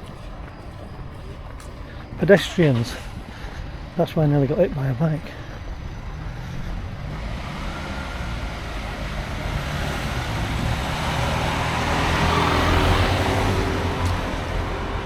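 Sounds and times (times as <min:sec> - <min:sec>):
vehicle engine driving past: 0:05.6 - 0:15.0.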